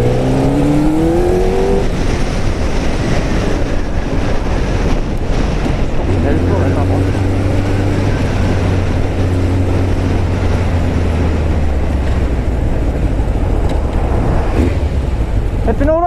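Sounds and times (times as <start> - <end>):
wind noise: 0.0 - 16.0.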